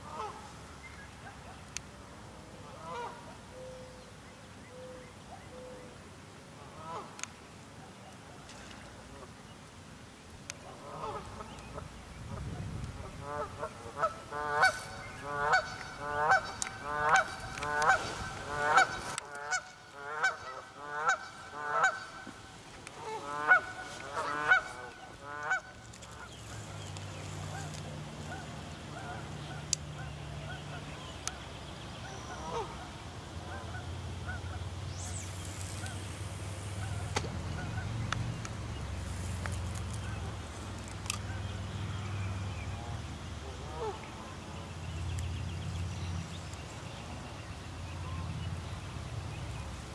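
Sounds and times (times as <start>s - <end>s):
geese honking: 2.7s - 3.2s, 10.6s - 12.4s, 13.0s - 22.4s, 23.0s - 26.8s, 27.4s - 31.0s, 32.0s - 38.0s, 43.4s - 44.3s.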